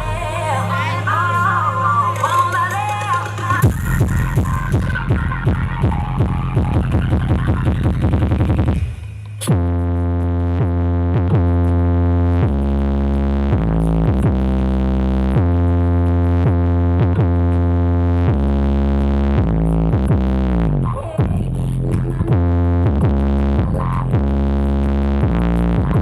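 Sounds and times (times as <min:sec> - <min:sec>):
electronic dance music heavy bass: 0:00.0 - 0:26.0.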